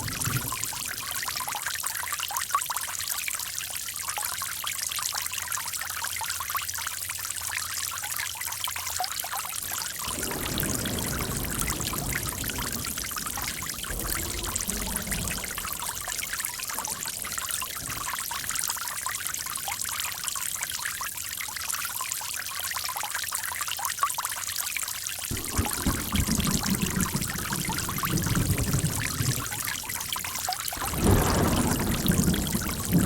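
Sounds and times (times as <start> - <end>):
running water rushing: 0.0 - 1.8, 9.6 - 21.3, 25.3 - 33.0.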